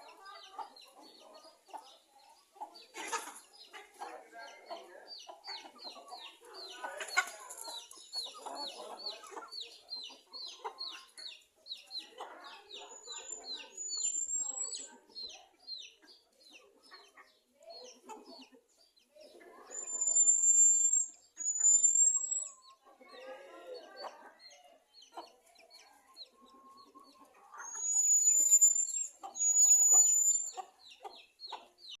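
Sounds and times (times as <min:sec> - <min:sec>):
chickens clucking: 0:00.0 - 0:32.0
short high peeps: 0:19.7 - 0:22.6, 0:27.7 - 0:30.6
high thin whistled notes: 0:19.8 - 0:22.6, 0:27.7 - 0:30.6.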